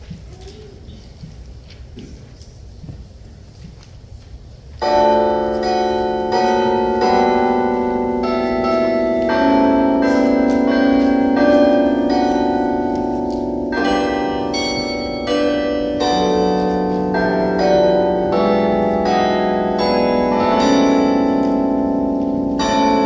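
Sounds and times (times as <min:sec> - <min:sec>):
church bells ringing: 0:04.8 - 0:23.0.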